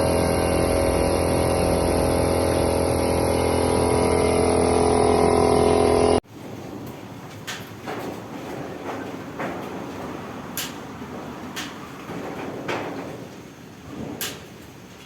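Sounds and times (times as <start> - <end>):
steady mechanical drone: 0.0 - 6.2.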